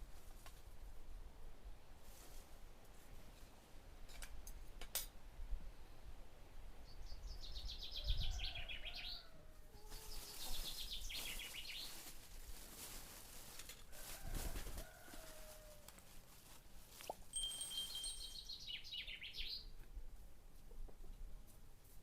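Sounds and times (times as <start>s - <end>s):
small bird trilling: 17.0s - 19.6s.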